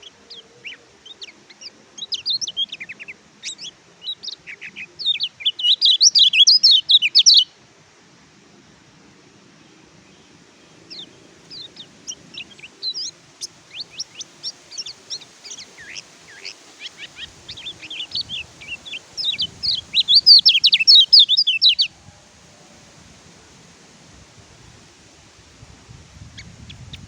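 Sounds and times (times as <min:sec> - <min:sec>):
bird twittering song: 0:00.0 - 0:07.5, 0:10.1 - 0:22.0, 0:26.2 - 0:27.0.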